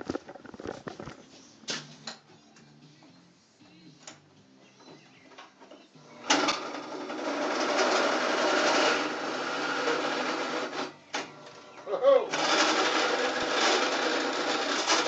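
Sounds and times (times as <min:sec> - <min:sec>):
grinder grinding steel: 0:06.2 - 0:11.1, 0:11.8 - 0:15.0.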